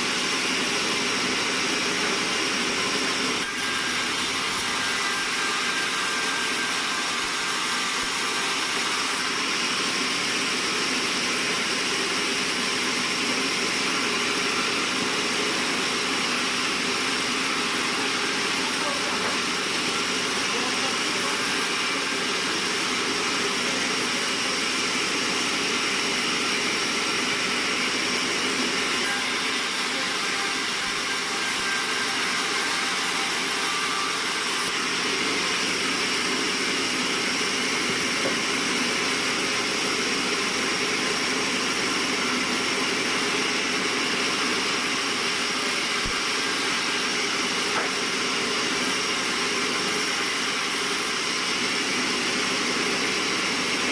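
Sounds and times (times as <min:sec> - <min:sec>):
sawmill machinery running: 0:00.0 - 0:53.9.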